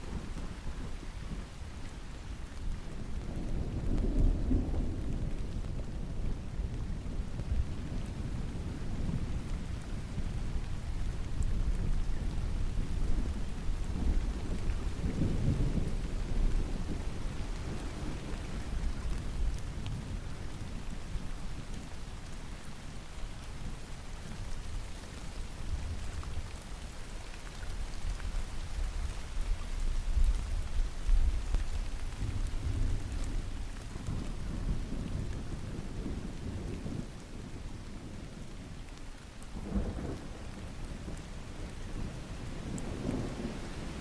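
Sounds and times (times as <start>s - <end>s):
steady rain falling: 0.0s - 44.0s
distant thunder rumbling: 39.6s - 44.0s.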